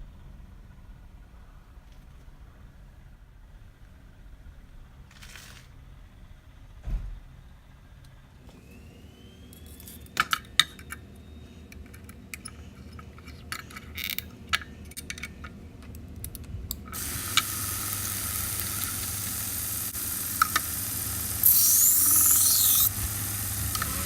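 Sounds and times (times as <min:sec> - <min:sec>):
steady high hiss: 0:17.0 - 0:24.0.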